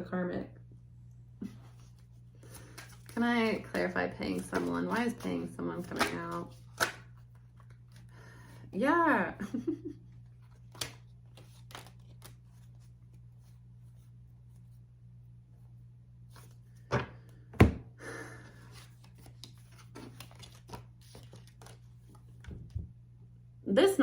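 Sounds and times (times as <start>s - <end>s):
steady low hum: 0.0s - 11.7s
cards rustling and clicking: 1.6s - 8.2s, 10.2s - 13.6s, 18.4s - 22.6s.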